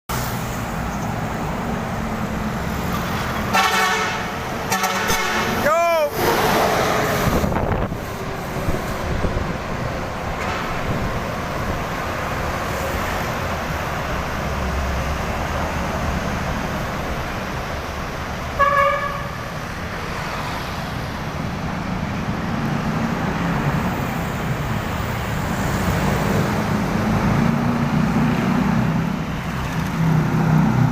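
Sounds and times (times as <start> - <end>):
road traffic noise: 0.1 - 30.9.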